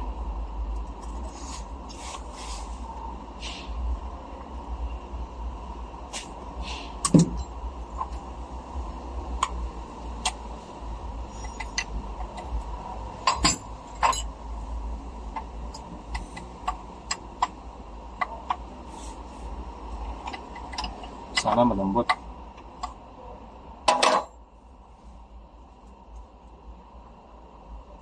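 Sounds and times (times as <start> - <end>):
steady low hum: 0.0 - 28.0
tools clinking on metal: 7.0 - 7.6, 11.3 - 12.5, 13.2 - 14.4.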